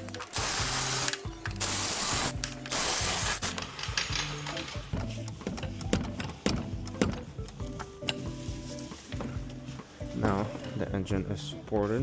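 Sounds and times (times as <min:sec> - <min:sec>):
clicking of tool and bolts: 0:00.0 - 0:04.8
pneumatic tool hissing bursts: 0:00.3 - 0:03.6.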